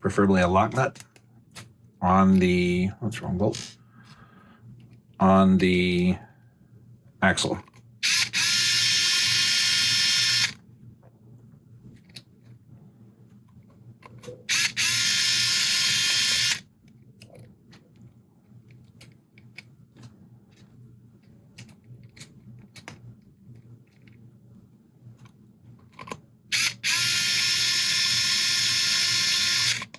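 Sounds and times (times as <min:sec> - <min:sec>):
electric screwdriver whining: 0:08.0 - 0:10.6, 0:14.5 - 0:16.6, 0:26.5 - 0:29.9.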